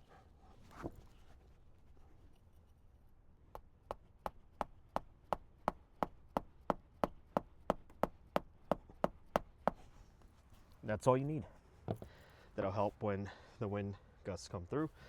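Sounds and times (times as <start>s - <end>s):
hammer striking nail: 3.5s - 9.8s.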